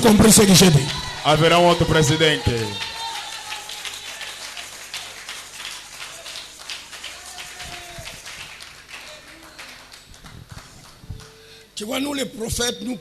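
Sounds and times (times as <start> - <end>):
light clapping: 2.6 - 11.4.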